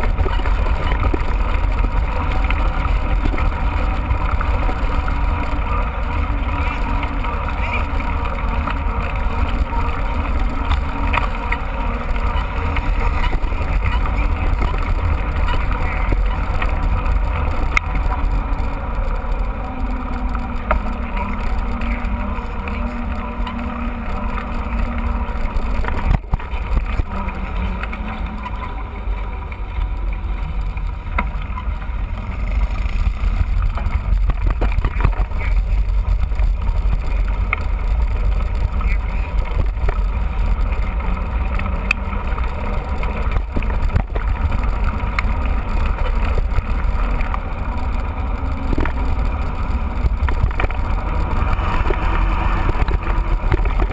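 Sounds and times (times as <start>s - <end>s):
mountain bike riding noise: 0.0s - 53.9s
wind rumbling on microphone: 0.0s - 53.9s.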